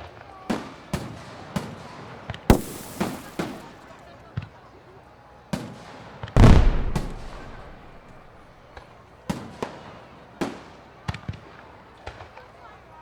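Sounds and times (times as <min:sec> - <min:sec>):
fireworks bangs: 0:02.5 - 0:03.8, 0:06.4 - 0:08.5
rolling echo: 0:02.5 - 0:03.8, 0:06.4 - 0:08.5.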